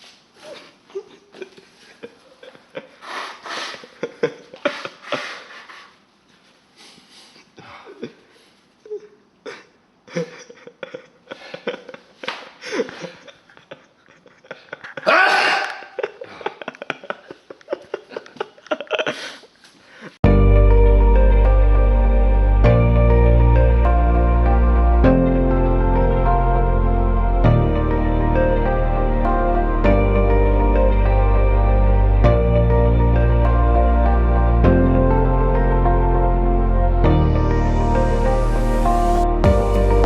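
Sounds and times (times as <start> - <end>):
loud sudden sneeze: 15.0 - 16.0.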